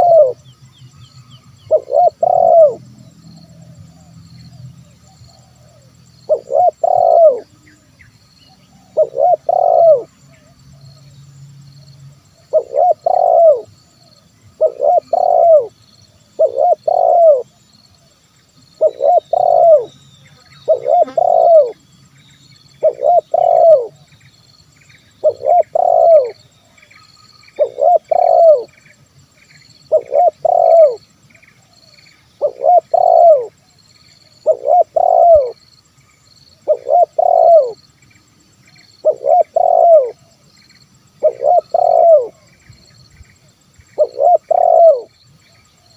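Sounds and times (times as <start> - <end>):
dove cooing: 0.0 - 0.4, 1.7 - 2.9, 5.3 - 7.5, 8.5 - 10.9, 12.4 - 18.2, 18.8 - 19.9, 20.6 - 21.8, 22.8 - 24.1, 25.2 - 26.4, 27.2 - 28.8, 29.9 - 31.0, 31.6 - 33.7, 34.3 - 35.6, 36.6 - 37.8, 39.0 - 40.4, 41.2 - 42.5, 44.0 - 45.1
faint high chirping: 0.0 - 45.9.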